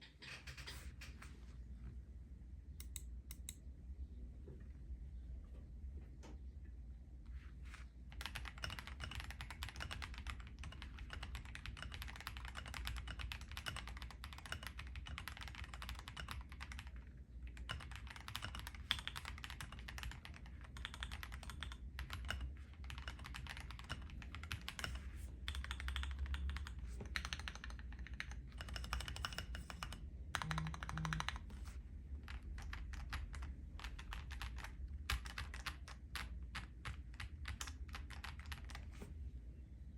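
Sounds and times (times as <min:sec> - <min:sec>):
steady low hum: 0:00.0 - 0:39.9.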